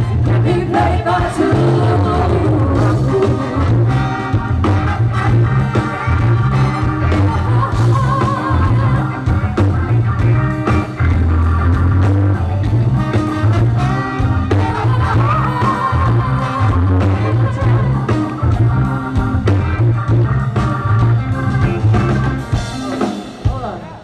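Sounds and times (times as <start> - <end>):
person singing: 0.0 - 4.1, 14.5 - 18.7
bass line: 0.0 - 24.0
drums: 0.0 - 24.0
live blues-rock band: 0.0 - 24.0.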